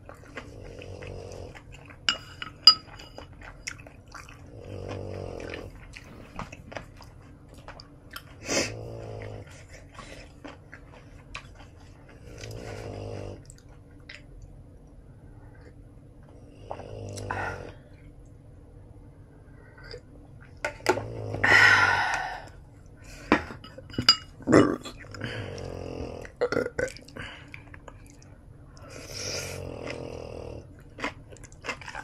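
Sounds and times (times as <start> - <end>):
eating noises: 0.0 - 14.5, 24.4 - 32.0
dog snoring: 0.5 - 1.6, 4.5 - 6.3, 8.5 - 9.5, 12.1 - 13.4, 16.5 - 17.8, 21.0 - 21.5, 25.1 - 26.3, 28.9 - 30.7.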